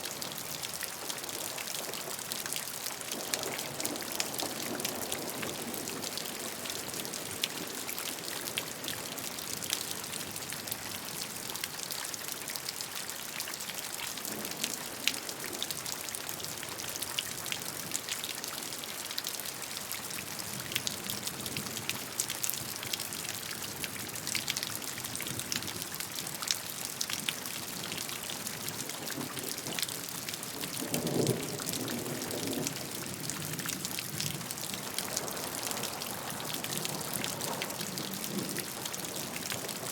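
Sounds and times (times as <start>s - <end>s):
steady rain hiss: 0.0s - 11.4s, 25.7s - 39.9s.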